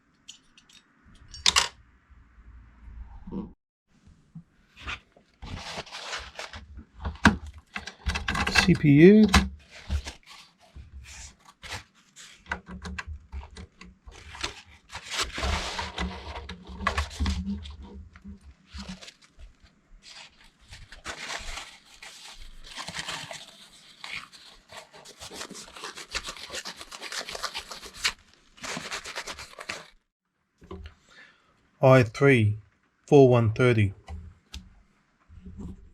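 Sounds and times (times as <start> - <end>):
computer parts clicking and scraping: 7.6 - 9.4.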